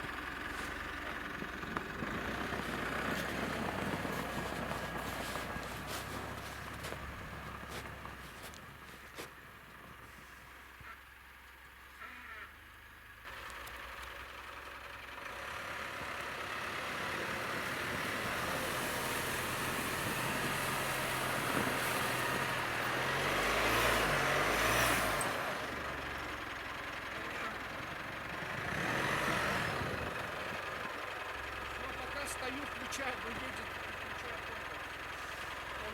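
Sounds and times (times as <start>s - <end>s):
car engine and tyre noise: 0.0s - 35.9s.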